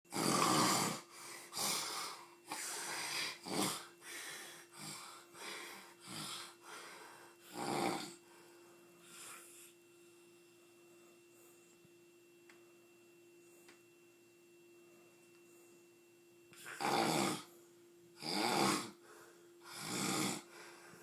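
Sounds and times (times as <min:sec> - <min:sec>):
rasping wheezy snoring: 0:00.1 - 0:08.4, 0:16.6 - 0:17.5, 0:18.2 - 0:21.0
faint steady hum: 0:00.1 - 0:21.0.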